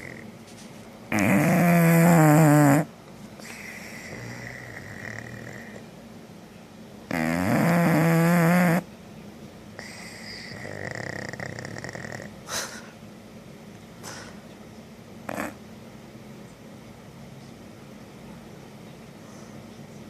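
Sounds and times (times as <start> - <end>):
dog snoring: 0.0 - 0.3, 1.1 - 5.9, 7.1 - 8.9, 9.8 - 12.7, 15.3 - 15.6
soft breathing: 19.2 - 19.8.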